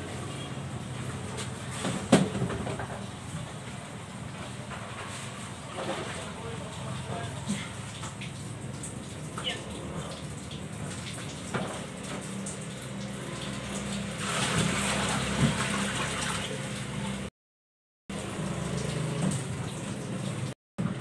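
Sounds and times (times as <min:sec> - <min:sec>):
tap water splashing into basin: 0:07.2 - 0:17.2, 0:18.5 - 0:20.5.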